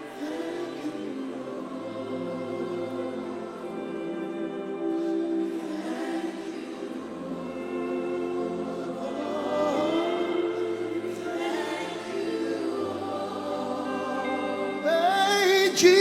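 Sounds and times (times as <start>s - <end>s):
voices singing together: 0.0s - 16.0s.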